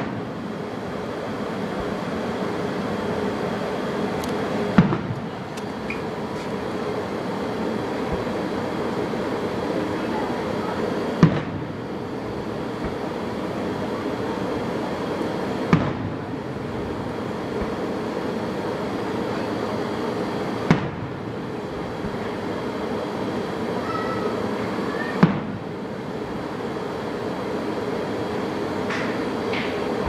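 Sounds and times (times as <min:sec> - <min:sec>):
fireworks booms: 0:04.7 - 0:06.7, 0:07.9 - 0:08.5, 0:11.2 - 0:11.8, 0:12.4 - 0:13.2, 0:15.6 - 0:18.0, 0:20.6 - 0:21.2, 0:25.2 - 0:25.7.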